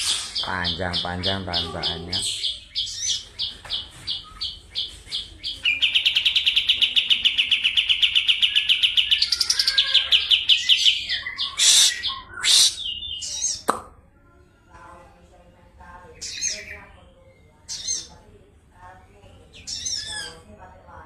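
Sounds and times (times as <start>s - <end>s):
bulbul singing trills: 0.0s - 13.7s.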